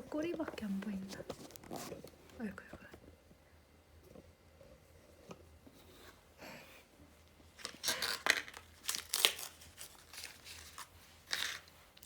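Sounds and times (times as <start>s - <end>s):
packaging rustling and crinkling: 0.0s - 2.2s, 7.5s - 12.0s.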